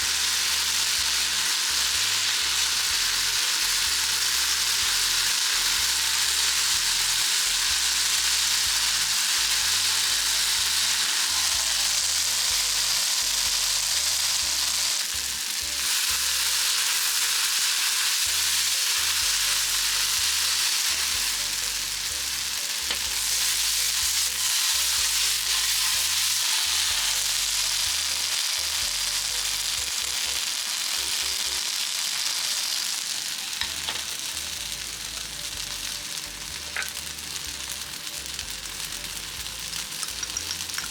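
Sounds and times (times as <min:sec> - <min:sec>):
vegetables sizzling in oil: 0:00.0 - 0:40.9.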